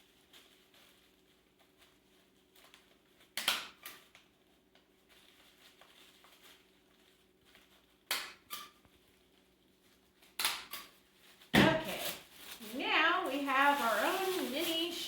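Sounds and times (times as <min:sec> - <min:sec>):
paper handling: 0:10.0 - 0:15.0.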